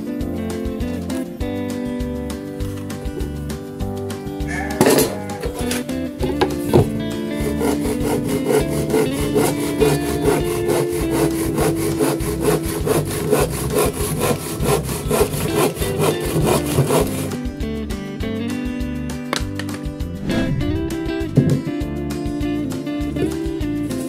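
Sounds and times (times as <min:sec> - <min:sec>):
hand saw strokes: 0:06.5 - 0:17.4.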